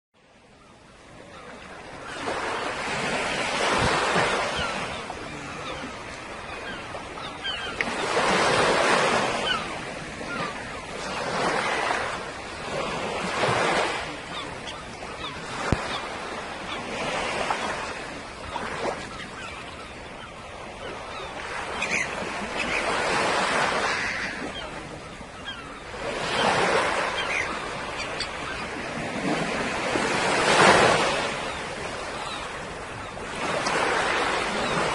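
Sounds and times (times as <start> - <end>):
sea waves breaking on a beach: 0.2 - 34.9.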